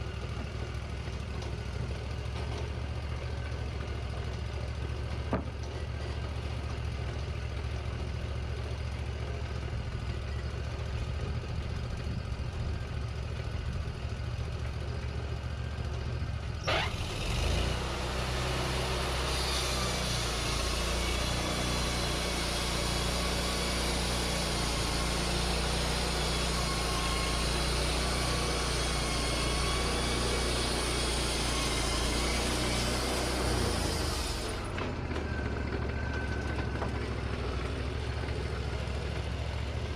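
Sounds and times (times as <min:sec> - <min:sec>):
sawmill engine running: 0:00.0 - 0:39.9
band saw cutting log: 0:16.6 - 0:35.0.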